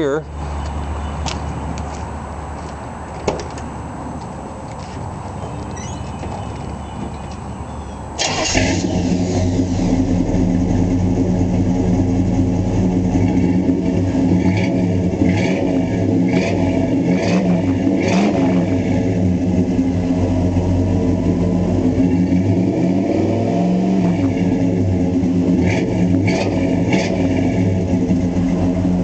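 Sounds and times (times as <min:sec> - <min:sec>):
car engine starting and idling: 0:05.4 - 0:29.0
engine revving bursts: 0:08.2 - 0:19.8, 0:20.4 - 0:29.0.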